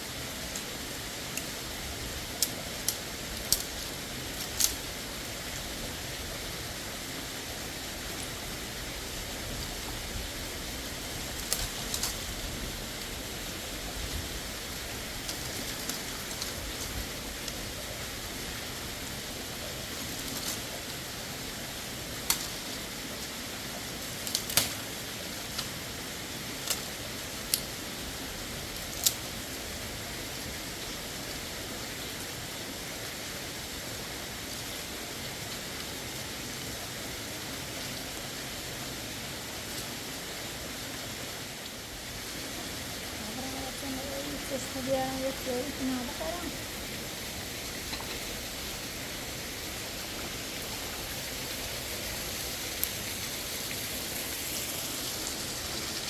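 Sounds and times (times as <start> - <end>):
running water rushing: 0.0 - 56.0.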